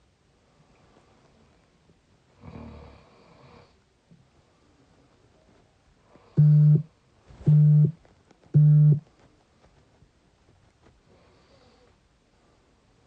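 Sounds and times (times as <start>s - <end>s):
low steady beeps: 6.4s - 6.9s, 7.5s - 8.0s, 8.6s - 9.0s.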